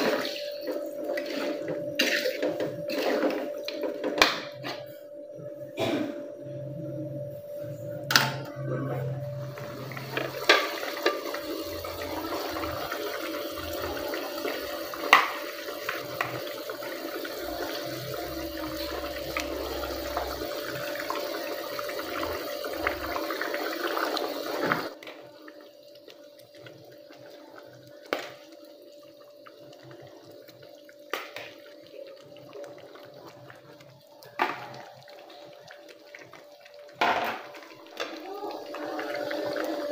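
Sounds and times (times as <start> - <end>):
water running from a tap: 9.4 - 39.9.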